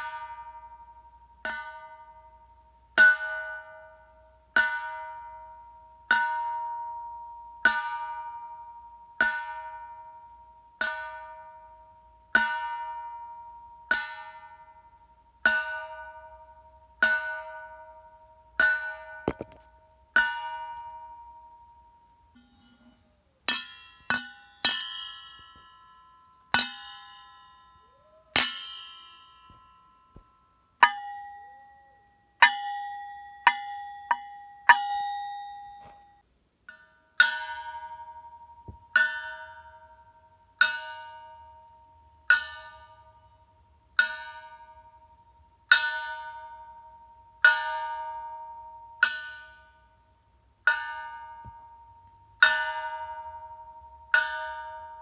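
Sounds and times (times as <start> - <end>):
bell chime ringing: 30.8 - 36.2.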